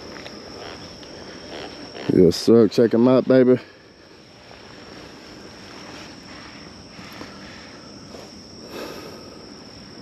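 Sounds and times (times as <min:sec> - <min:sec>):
insects chirring: 0:00.0 - 0:10.0.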